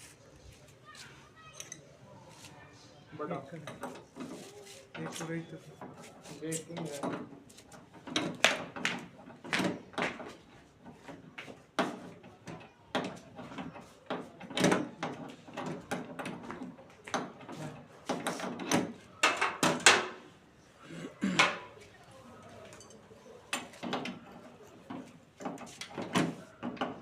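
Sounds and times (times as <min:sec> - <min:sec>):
knocks and clacks of parts handled: 0:03.5 - 0:20.3, 0:21.4 - 0:21.8, 0:22.6 - 0:27.0.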